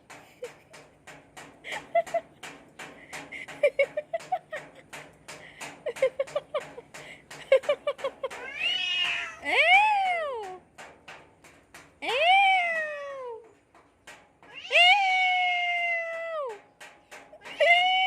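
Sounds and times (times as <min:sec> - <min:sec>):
cats caterwauling: 0:08.4 - 0:09.4.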